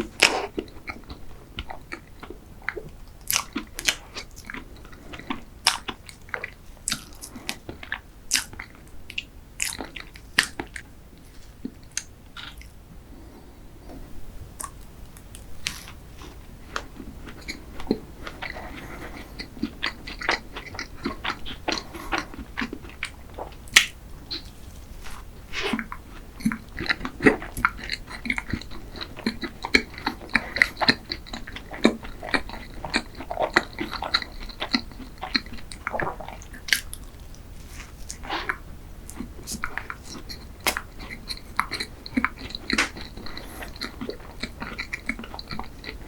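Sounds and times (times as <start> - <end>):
person chewing with wet mouth clicks: 0.0 - 10.9, 11.6 - 12.8, 16.7 - 24.6, 25.6 - 46.0
crunching: 14.6 - 46.0.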